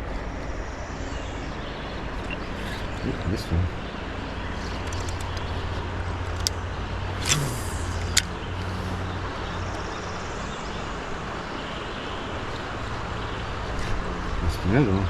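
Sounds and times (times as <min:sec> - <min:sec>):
river current rushing: 0:02.0 - 0:09.9
sharp clicks: 0:04.7 - 0:06.6, 0:07.2 - 0:08.9.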